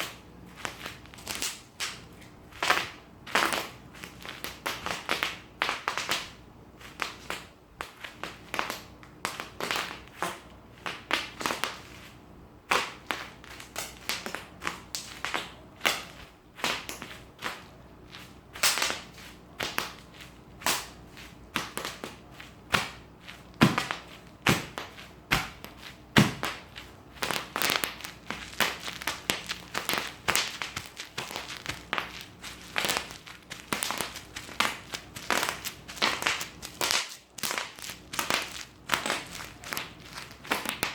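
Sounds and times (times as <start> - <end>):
bubble wrap popping: 0.0 - 12.0, 12.7 - 40.9
plastic crinkling: 12.9 - 40.9.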